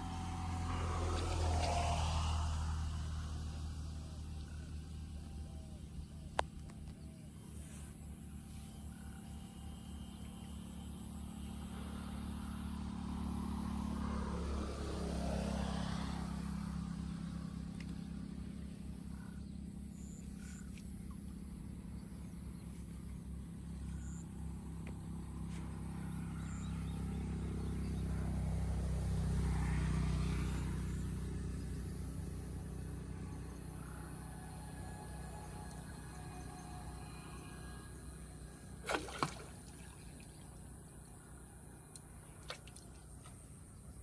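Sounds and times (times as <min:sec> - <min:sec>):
motor vehicle passing by: 0:00.0 - 0:44.0
steady low hum: 0:00.0 - 0:44.0.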